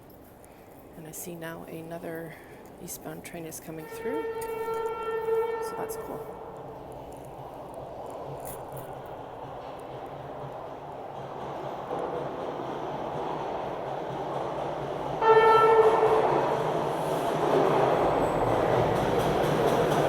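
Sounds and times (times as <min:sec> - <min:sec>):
subway train running noise: 0:01.0 - 0:20.0
train horn blast: 0:03.8 - 0:06.5, 0:15.2 - 0:16.5.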